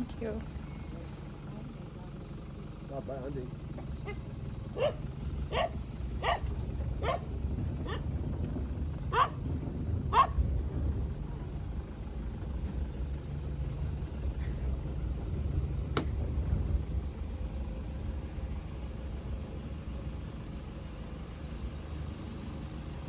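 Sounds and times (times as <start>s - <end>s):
insects chirping: 0.0s - 23.0s
low rumble: 4.0s - 20.2s.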